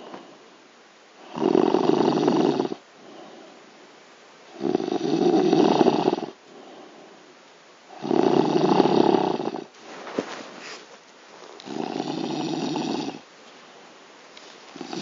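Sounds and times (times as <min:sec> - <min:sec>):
man snoring loudly: 0:01.2 - 0:02.8, 0:04.6 - 0:06.4, 0:07.9 - 0:09.7, 0:11.7 - 0:13.2, 0:14.8 - 0:15.0.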